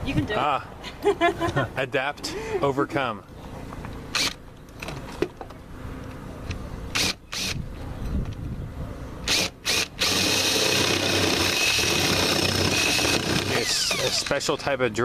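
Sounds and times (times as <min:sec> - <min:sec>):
electric drill whining: 0:06.9 - 0:07.6, 0:09.3 - 0:14.3.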